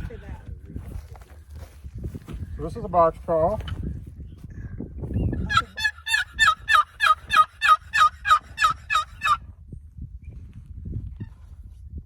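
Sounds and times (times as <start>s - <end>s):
turkey call yelps: 5.5s - 9.4s.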